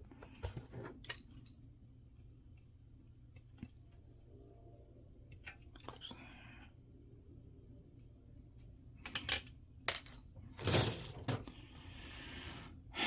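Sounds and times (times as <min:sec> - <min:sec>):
low steady hum: 0:00.0 - 0:13.0
plastic parts clicking: 0:09.0 - 0:11.5.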